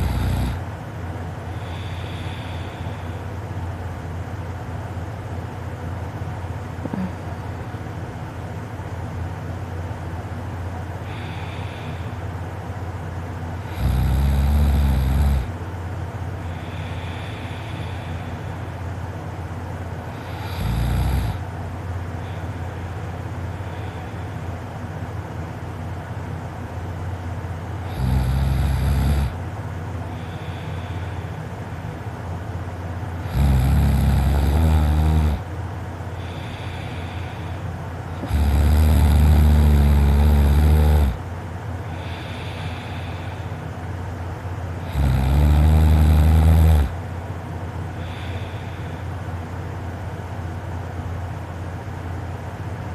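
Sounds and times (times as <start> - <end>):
person snoring: 0.0 - 0.7, 1.6 - 3.2, 6.8 - 7.3, 13.6 - 15.6, 20.1 - 21.4, 27.8 - 29.4, 33.2 - 35.5, 38.2 - 41.2, 44.8 - 47.0
steady low hum: 0.0 - 52.9
breath sounds: 1.5 - 3.5, 11.0 - 13.1, 16.3 - 21.5, 22.1 - 28.0, 29.2 - 33.5, 35.3 - 39.2, 39.8 - 45.3, 47.9 - 49.4.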